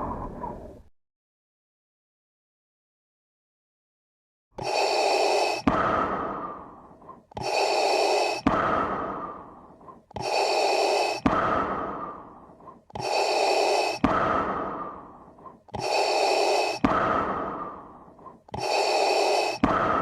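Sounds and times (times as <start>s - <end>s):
mechanical mask breathing: 4.6s - 20.0s.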